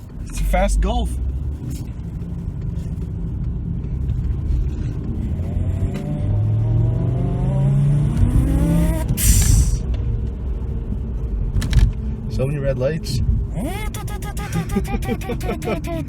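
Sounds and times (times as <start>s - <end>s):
car engine accelerating: 0.0s - 16.0s
man imitating turbo whine: 8.3s - 9.8s
man making hissing psh: 9.1s - 9.8s.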